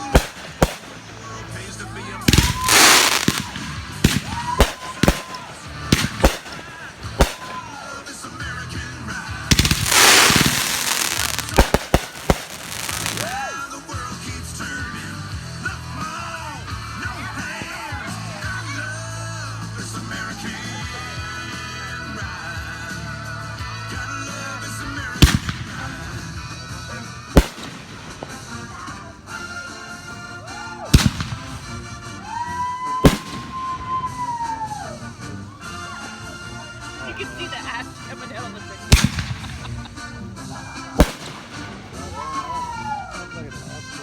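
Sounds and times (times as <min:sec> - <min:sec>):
fireworks crackling and banging: 0:00.0 - 0:13.9, 0:23.8 - 0:44.0
background music with singing: 0:00.0 - 0:44.0.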